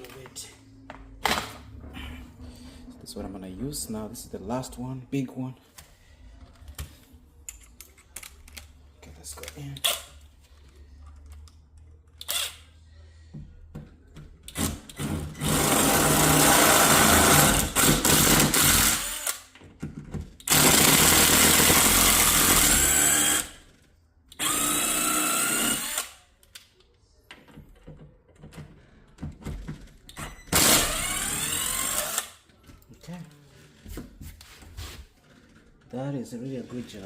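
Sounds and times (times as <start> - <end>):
power drill boring through wood: 14.6 - 19.4, 20.5 - 23.6, 24.4 - 26.1, 30.6 - 32.3.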